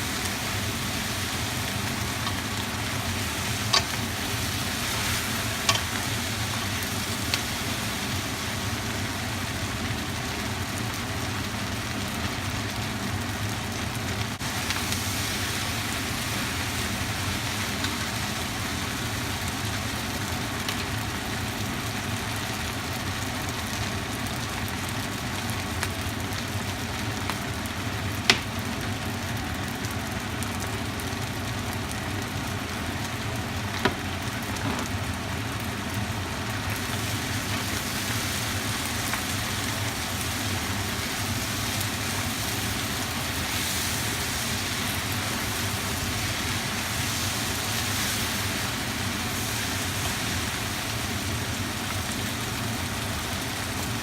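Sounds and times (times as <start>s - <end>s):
food sizzling in a pan: 0.0s - 54.0s
utensil clicking against pan: 3.5s - 4.1s, 5.6s - 6.1s.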